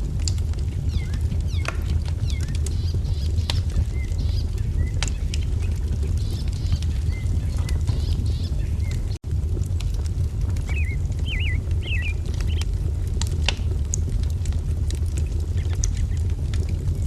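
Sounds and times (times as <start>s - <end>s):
wood fire crackling and popping: 0.0s - 17.0s
small birds chirping: 0.7s - 9.2s, 10.7s - 12.8s.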